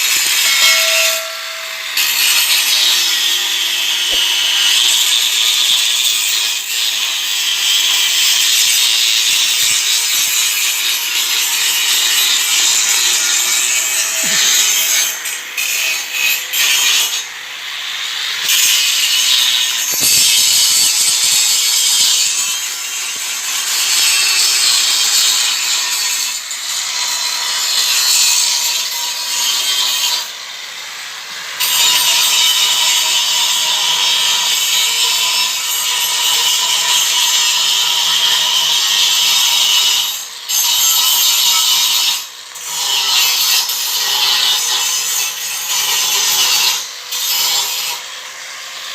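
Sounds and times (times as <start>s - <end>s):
angle grinder grinding metal: 0.0s - 48.9s.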